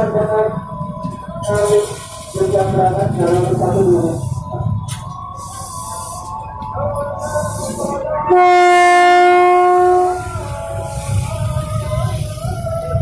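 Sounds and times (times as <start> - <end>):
train horn blast: 8.3 - 11.2.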